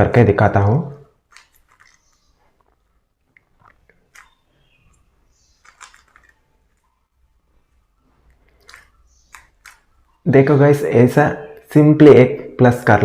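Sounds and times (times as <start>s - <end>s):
plastic cube clicks and rattles: 1.3s - 2.2s, 5.6s - 6.8s, 8.5s - 9.9s.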